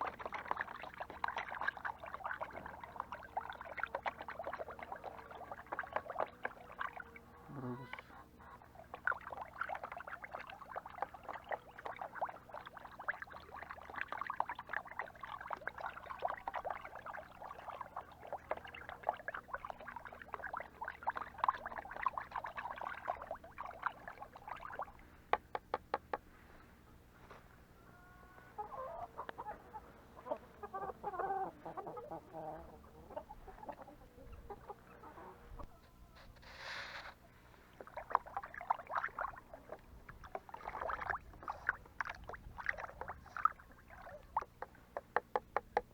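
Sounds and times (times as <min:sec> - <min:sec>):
chickens clucking: 0:07.1 - 0:08.7, 0:26.9 - 0:37.3.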